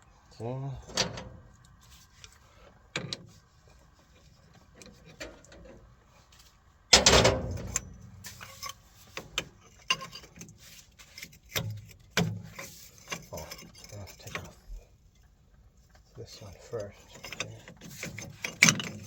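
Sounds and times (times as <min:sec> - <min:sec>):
tools clattering: 0:06.9 - 0:14.7, 0:16.8 - 0:19.0
tools knocking and clicking: 0:07.0 - 0:10.5, 0:17.1 - 0:19.0.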